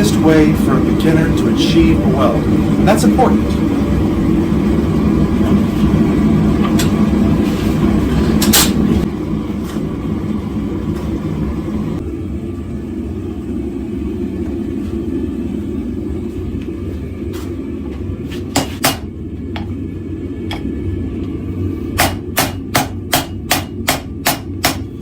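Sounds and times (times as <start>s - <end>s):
hammer striking on anvil: 18.5s - 19.7s, 22.0s - 24.9s.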